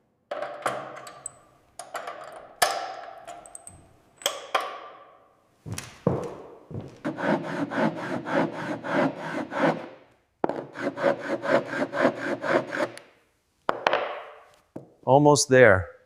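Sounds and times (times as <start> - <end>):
sanding strokes on wood: 7.0 - 9.9, 10.8 - 12.9.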